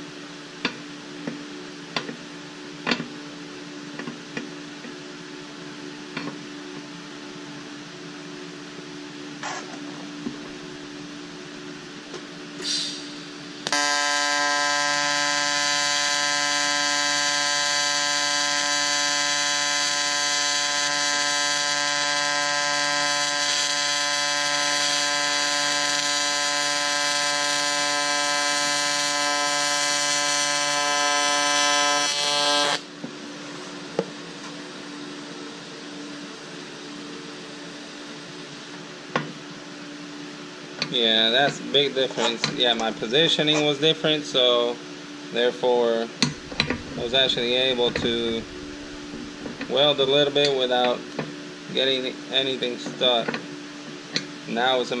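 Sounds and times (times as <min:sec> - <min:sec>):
welding arc buzz: 0:09.4 - 0:09.8, 0:12.7 - 0:32.9, 0:46.2 - 0:50.7.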